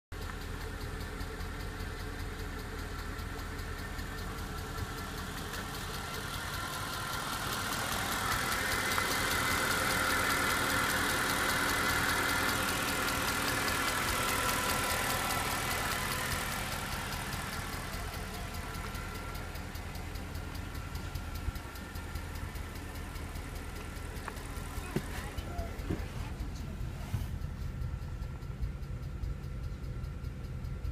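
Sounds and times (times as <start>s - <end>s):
car engine idling: 0.1s - 30.9s
fast even engine ticking: 0.1s - 30.9s.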